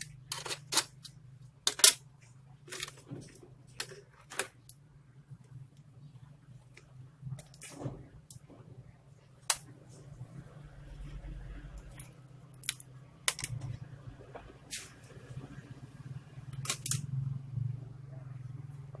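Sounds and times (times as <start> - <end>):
steady low hum: 8.0 - 19.0
laptop parts clicking: 16.6 - 17.0.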